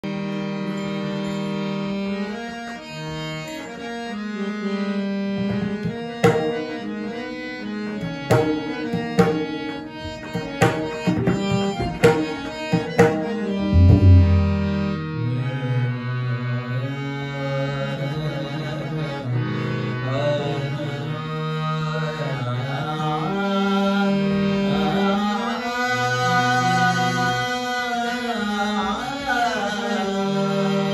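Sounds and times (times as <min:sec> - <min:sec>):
harmonium melody: 0:00.0 - 0:30.9
drum strokes: 0:12.1 - 0:15.0.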